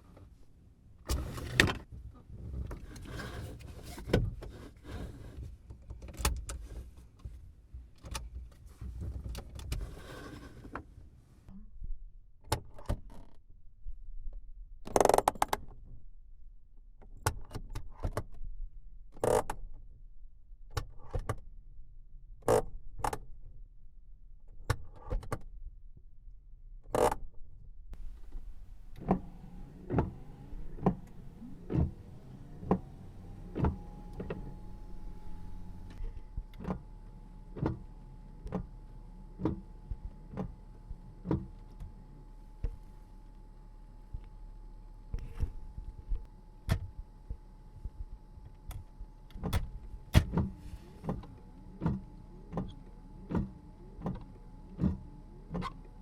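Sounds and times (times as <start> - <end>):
low hum: 27.9 - 53.0
sharp clicks and knocks: 28.0 - 36.8
rising steady tone: 28.1 - 36.0.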